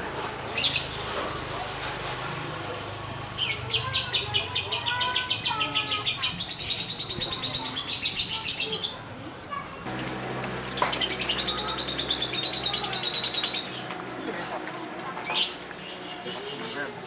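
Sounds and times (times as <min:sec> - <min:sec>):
murmur of voices: 0:00.0 - 0:17.0
lovebird chattering chirps: 0:10.8 - 0:14.0.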